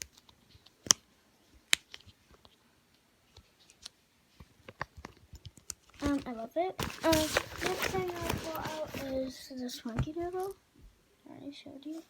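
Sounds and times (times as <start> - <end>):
handling noise: 6.0 - 9.3.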